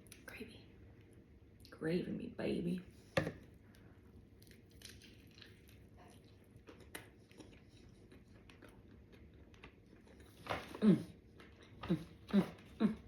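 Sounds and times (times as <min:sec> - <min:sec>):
low room noise: 0:00.0 - 0:13.0
chewing fried chicken: 0:04.2 - 0:13.0.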